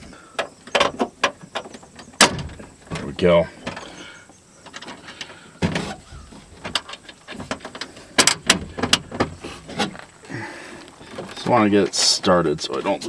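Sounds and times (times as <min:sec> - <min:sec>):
metal clanks: 0:04.6 - 0:10.0.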